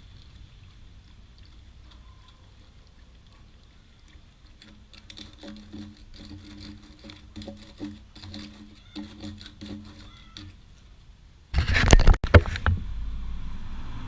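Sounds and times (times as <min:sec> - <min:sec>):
low hum: 0:00.0 - 0:14.0
bike chain links clattering: 0:04.5 - 0:10.6.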